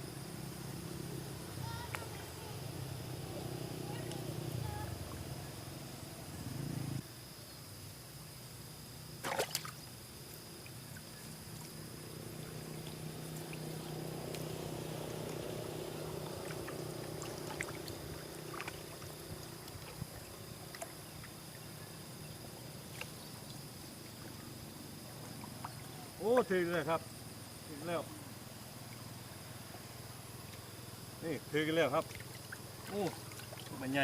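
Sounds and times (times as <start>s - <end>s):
small splashes and drips: 9.2s - 21.8s, 22.4s - 24.5s, 25.2s - 26.0s, 31.8s - 34.0s
water sloshing and trickling: 9.2s - 26.5s, 31.7s - 34.0s.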